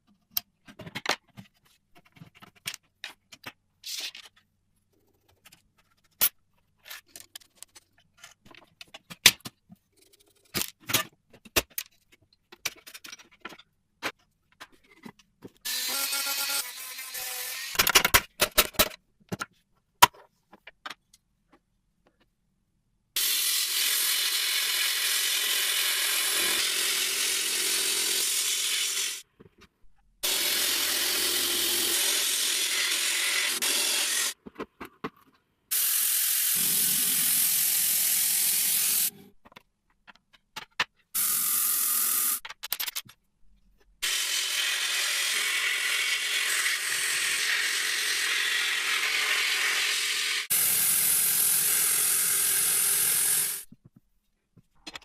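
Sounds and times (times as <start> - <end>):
workshop tool hissing whir: 23.2 - 29.2, 30.2 - 34.4, 35.7 - 39.2, 41.2 - 42.4, 44.0 - 53.6.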